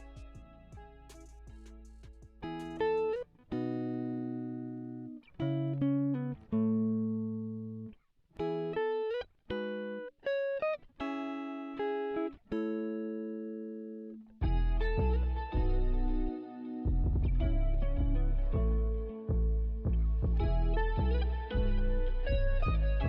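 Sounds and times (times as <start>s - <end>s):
bass: 0.0s - 2.9s, 14.4s - 23.0s
plucked guitar notes and chords: 0.0s - 23.0s.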